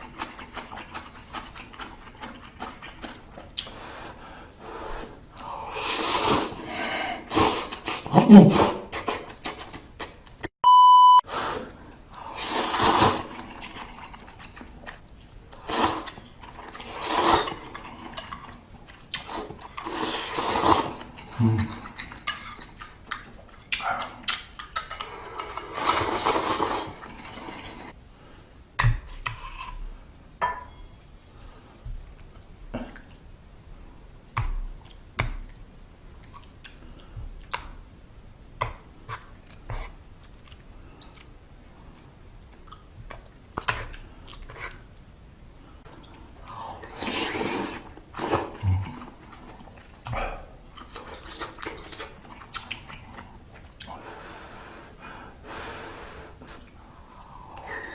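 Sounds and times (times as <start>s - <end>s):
slurping noodles: 4.8s - 10.1s, 11.4s - 14.7s, 15.6s - 18.2s, 19.1s - 23.0s, 23.7s - 28.0s, 46.6s - 49.6s
short beep: 10.6s - 11.2s.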